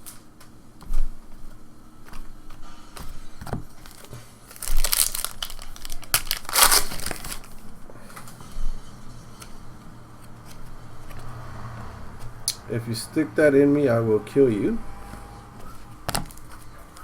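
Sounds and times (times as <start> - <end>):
cards being handled: 2.0 - 8.4, 10.2 - 11.3, 15.7 - 17.0
foil wrapper crinkling and tearing: 3.7 - 7.6.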